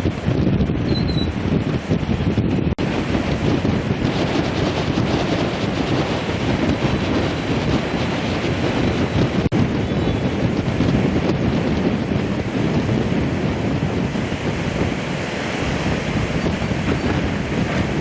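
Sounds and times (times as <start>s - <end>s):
wind buffeting microphone: 0.0s - 18.0s
river water rushing: 14.2s - 18.0s.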